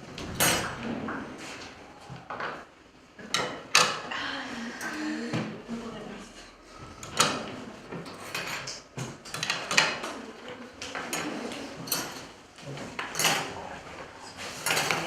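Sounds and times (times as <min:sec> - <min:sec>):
kitchen utensils clattering: 0:00.0 - 0:01.1, 0:07.0 - 0:10.3, 0:11.0 - 0:12.3, 0:12.9 - 0:13.6, 0:14.5 - 0:15.0.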